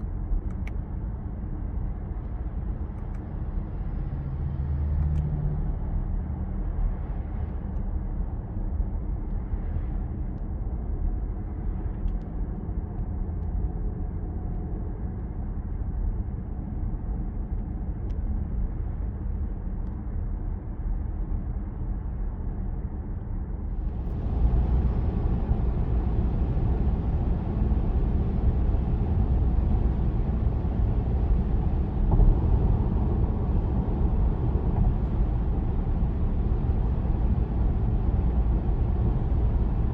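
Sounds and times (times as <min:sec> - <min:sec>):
car cabin road and engine rumble: 0:22.6 - 0:39.9.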